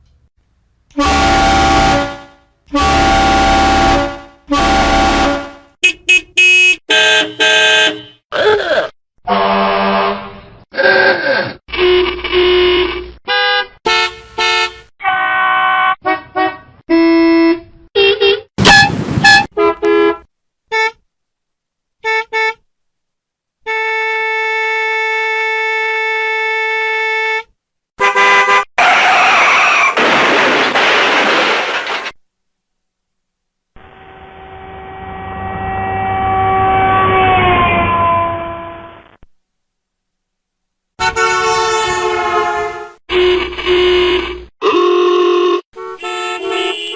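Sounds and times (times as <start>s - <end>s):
vehicle air horns blasting: 0.9s - 8.2s, 9.3s - 10.6s, 11.7s - 21.0s, 23.7s - 28.7s, 33.9s - 39.1s, 41.0s - 46.9s.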